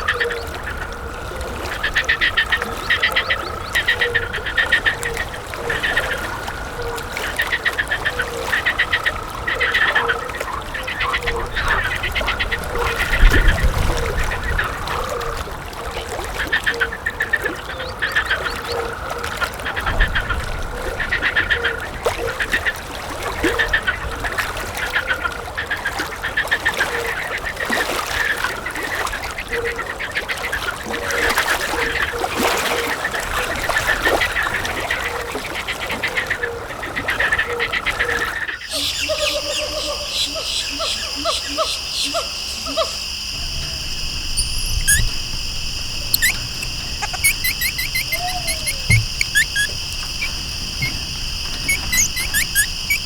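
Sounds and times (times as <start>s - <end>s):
birds calling: 16.4s - 18.9s, 43.8s - 53.0s.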